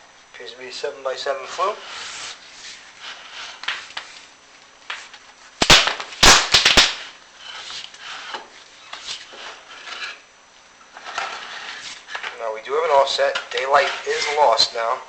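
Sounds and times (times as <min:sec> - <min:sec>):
sharp loud clacks: 0:05.6 - 0:07.0
camera cable scraping on clay tile: 0:07.4 - 0:10.2, 0:10.9 - 0:12.4, 0:13.5 - 0:14.6.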